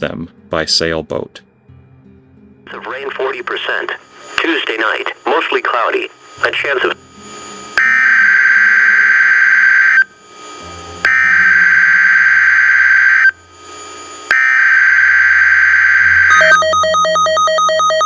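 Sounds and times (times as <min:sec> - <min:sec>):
harsh digital data bursts: 0:03.8 - 0:17.0.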